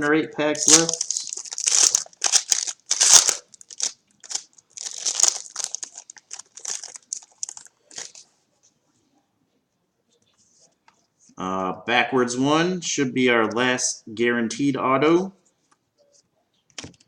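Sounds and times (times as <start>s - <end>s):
wrapper tearing and crinkling: 0.6s - 8.2s.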